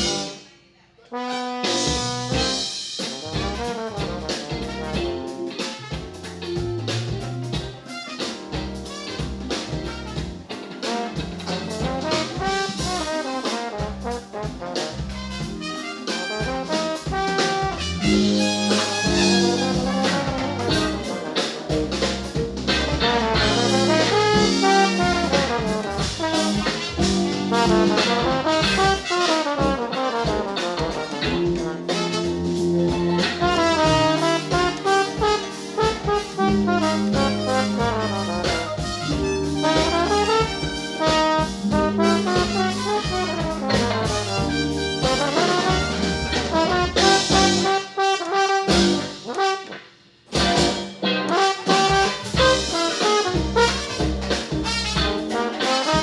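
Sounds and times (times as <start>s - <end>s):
trumpets and trombones: 0.0s - 56.0s
low bass line: 17.7s - 21.1s, 21.7s - 28.9s, 36.5s - 40.6s, 41.6s - 47.6s.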